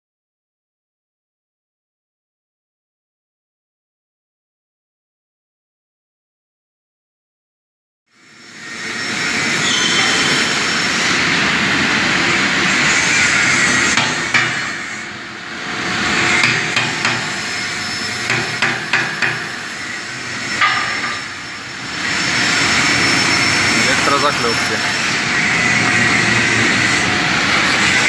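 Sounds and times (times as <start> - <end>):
metallic knocks on steel: 16.4 - 17.4, 18.3 - 19.5, 20.6 - 21.3.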